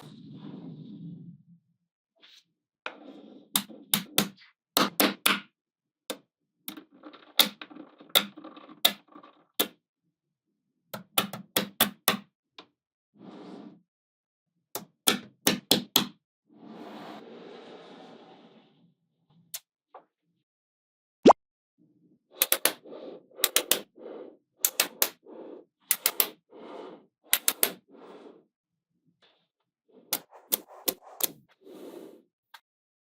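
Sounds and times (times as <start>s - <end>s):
balls rubbing and rolling: 0.0s - 1.6s, 2.2s - 5.0s, 6.7s - 9.8s, 16.5s - 19.5s, 22.3s - 28.5s, 29.1s - 32.6s.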